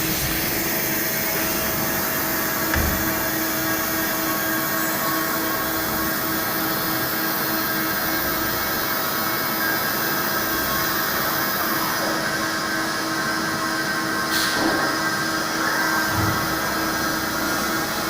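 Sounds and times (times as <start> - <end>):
milling machine drone: 0.0 - 12.7.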